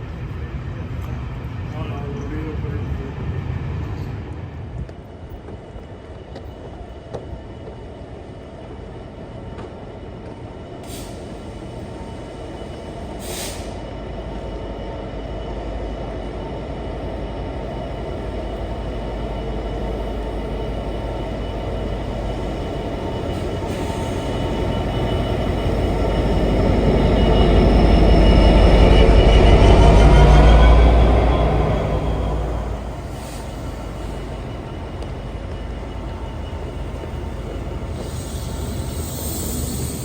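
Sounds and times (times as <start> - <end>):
train rumble: 0.0 - 40.0
high-pitched whines: 17.8 - 40.0.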